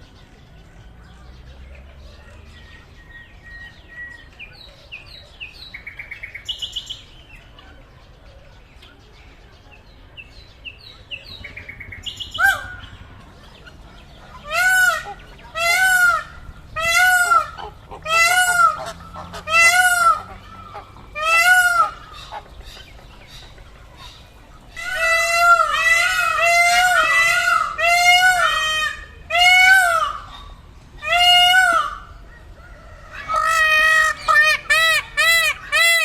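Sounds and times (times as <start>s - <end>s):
peacock calling loudly: 14.4s - 22.9s, 24.8s - 36.0s.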